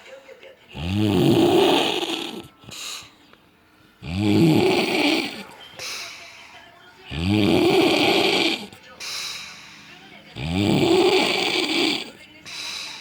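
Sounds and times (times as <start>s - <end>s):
man snoring heavily: 0.8s - 3.1s, 4.0s - 5.5s, 7.1s - 8.8s, 10.4s - 12.2s.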